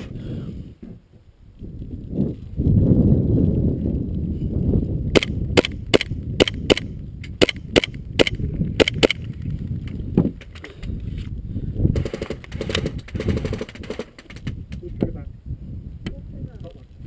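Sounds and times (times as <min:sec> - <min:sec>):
rapid fire rattle: 0:11.8 - 0:14.9.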